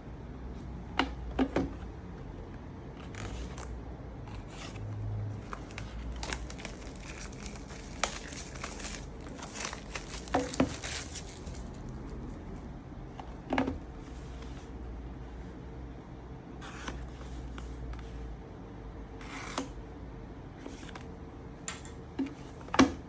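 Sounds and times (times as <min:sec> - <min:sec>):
box wrapping crinkling and rustling: 0:05.4 - 0:12.5.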